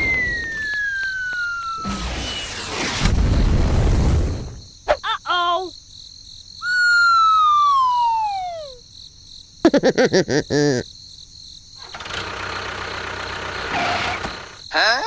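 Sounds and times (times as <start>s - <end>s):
descending cartoon whistle: 0.0s - 3.2s, 6.6s - 8.8s.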